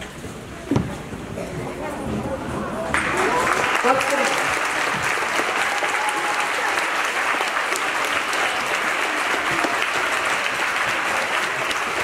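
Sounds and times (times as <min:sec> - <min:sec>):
audience applause: 0:02.9 - 0:12.0.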